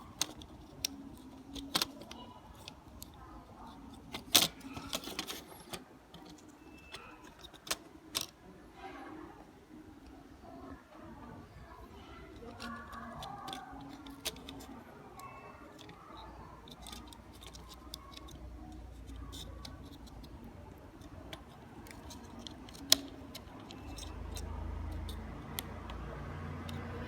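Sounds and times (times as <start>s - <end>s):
small plastic clicks and taps: 0.2s - 3.2s, 12.4s - 20.4s, 21.0s - 27.0s.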